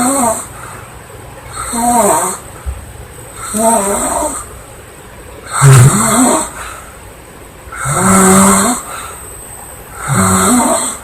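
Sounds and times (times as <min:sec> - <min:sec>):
woman snoring loudly: 0:00.0 - 0:00.5, 0:05.5 - 0:06.6, 0:07.8 - 0:08.9, 0:10.0 - 0:11.0
quiet breathing: 0:00.0 - 0:04.6, 0:06.0 - 0:07.1, 0:07.7 - 0:11.0.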